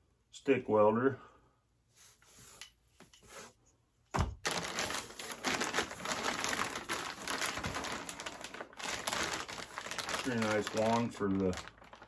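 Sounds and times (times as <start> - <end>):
thump: 4.1 - 4.4
packaging crinkling: 4.3 - 12.0.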